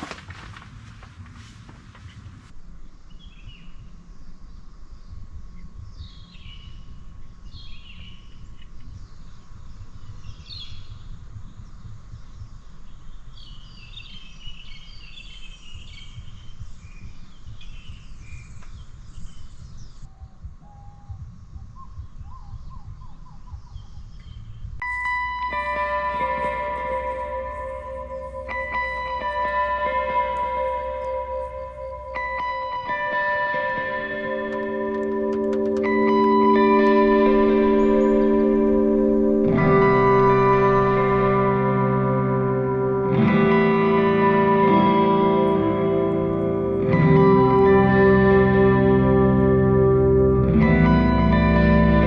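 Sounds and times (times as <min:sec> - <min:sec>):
small birds chirping and trilling: 0:03.0 - 0:40.0
music with ringing tones: 0:24.8 - 0:52.0.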